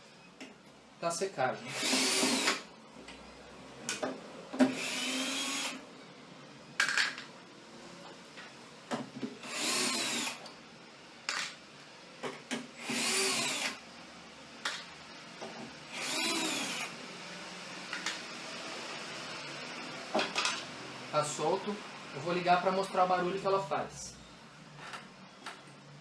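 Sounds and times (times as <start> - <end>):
cordless drill whining: 1.7 - 2.7, 4.7 - 5.8, 9.4 - 10.5, 12.8 - 13.8, 15.9 - 17.0
drill bit and screw clicks: 1.8 - 2.7, 12.8 - 13.8.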